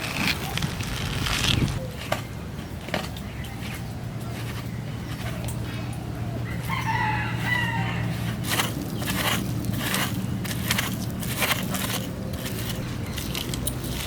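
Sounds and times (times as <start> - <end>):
steady low hum: 0.0 - 14.0
rooster crowing: 6.4 - 8.2.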